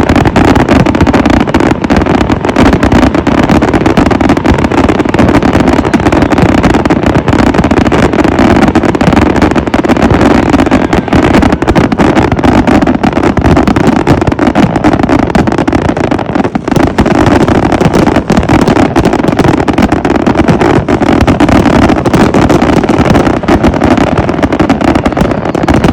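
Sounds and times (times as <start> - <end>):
fireworks explosions rumbling: 0.0 - 25.9.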